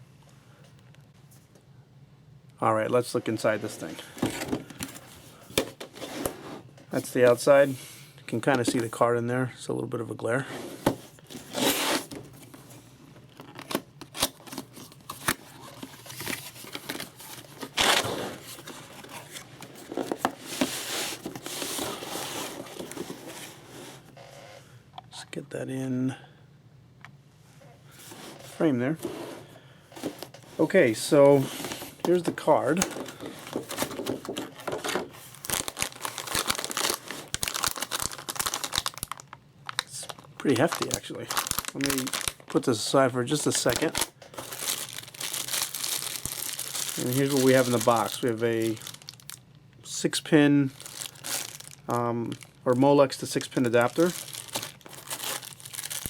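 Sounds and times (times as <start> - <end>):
packaging rustling and crinkling: 10.8 - 24.1, 29.9 - 49.5, 50.6 - 56.0.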